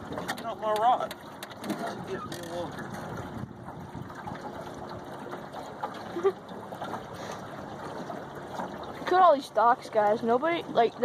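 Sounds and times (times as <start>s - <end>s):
water lapping against boat hull: 0.0s - 11.0s.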